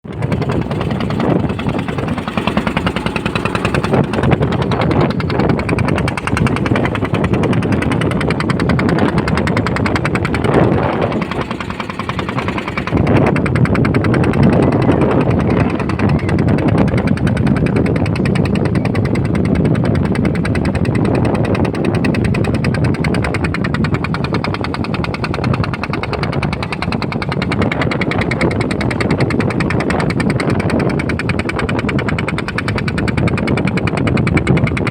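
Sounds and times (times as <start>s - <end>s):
boat engine knocking: 0.0s - 34.9s.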